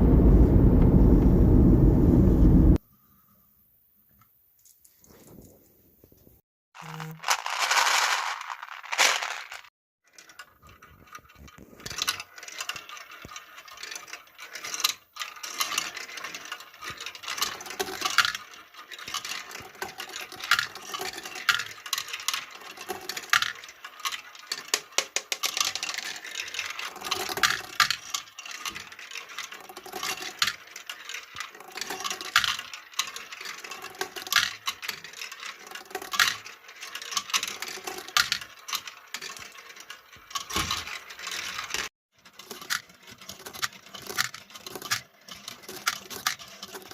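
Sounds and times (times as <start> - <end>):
marbles clicking on wood: 6.8 - 46.9
marbles rolling down wooden run: 6.8 - 46.9.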